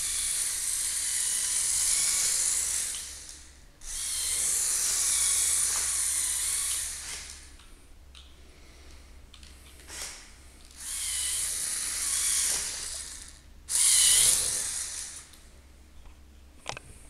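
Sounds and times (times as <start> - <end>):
small electric motor whirring: 0.0 - 7.6, 9.8 - 15.4.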